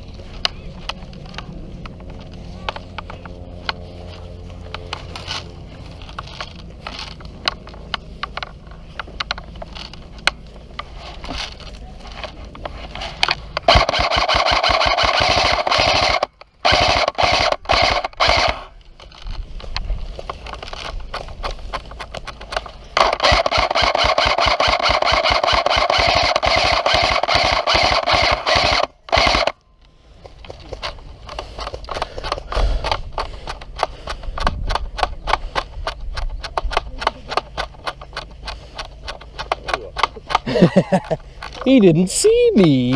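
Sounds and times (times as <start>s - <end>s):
sharp clicks: 4.5s - 42.9s
airsoft gun firing full auto: 13.6s - 18.7s, 23.0s - 29.6s.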